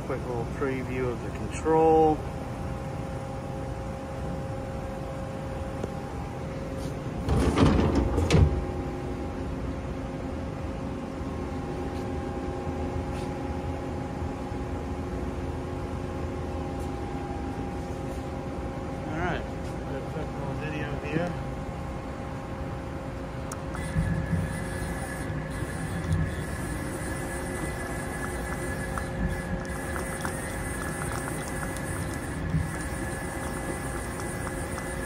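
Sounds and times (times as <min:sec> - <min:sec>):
faint steady tones: 0:23.5 - 0:35.0
lathe humming: 0:23.5 - 0:35.0.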